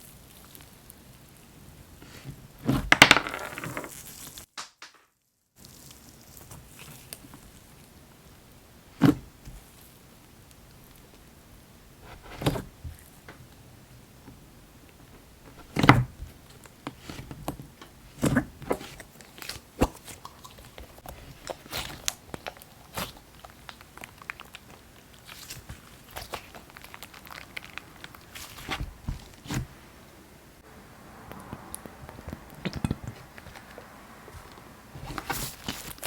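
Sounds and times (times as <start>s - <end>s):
slime squelching: 18.1s - 30.0s, 31.3s - 36.0s.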